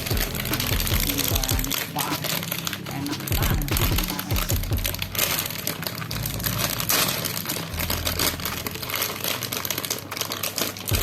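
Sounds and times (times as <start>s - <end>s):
packaging crinkling and rustling: 4.8s - 11.0s.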